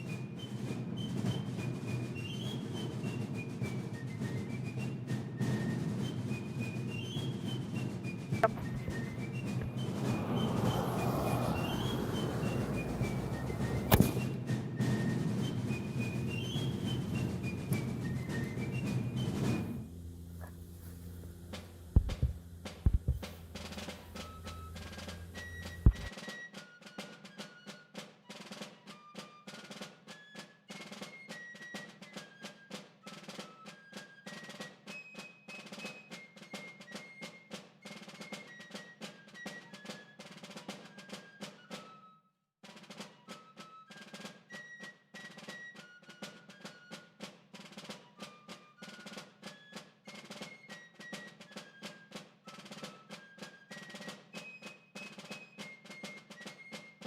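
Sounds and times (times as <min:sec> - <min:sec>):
percussive beat with simple melody: 0:08.4 - 0:09.0, 0:22.0 - 0:23.3, 0:25.8 - 0:26.1.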